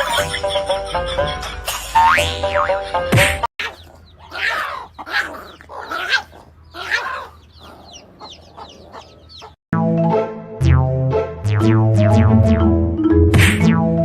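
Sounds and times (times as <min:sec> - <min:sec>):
bird squawks: 0:03.6 - 0:09.6.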